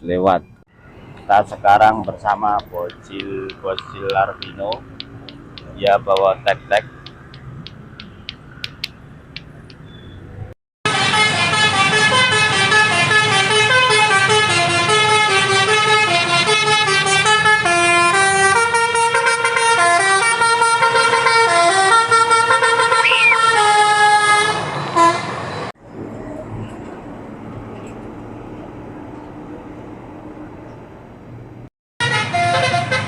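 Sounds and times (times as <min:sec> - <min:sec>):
bus melody horn playing a tune: 0:10.9 - 0:25.4, 0:32.0 - 0:33.0.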